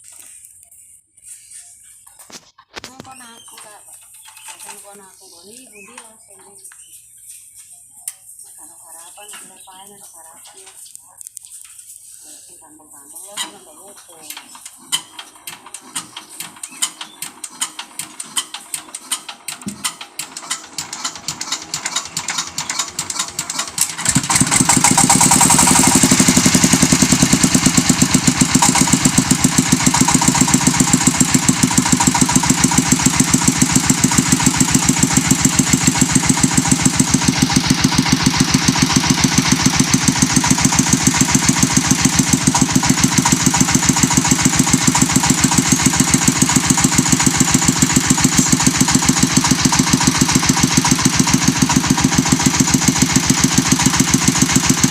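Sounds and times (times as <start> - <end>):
machine engine knocking: 13.4 - 54.9.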